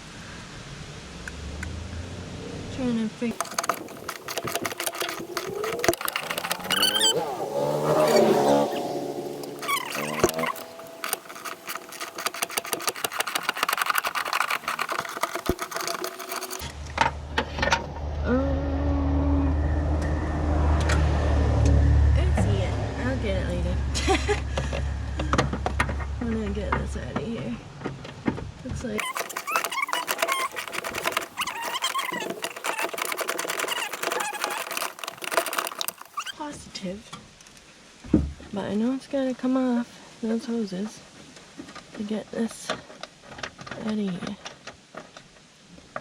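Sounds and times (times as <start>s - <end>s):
rapid mechanical clicking: 3.3s - 16.7s, 29.0s - 36.4s
ratchet wrench clicking: 3.4s - 8.4s.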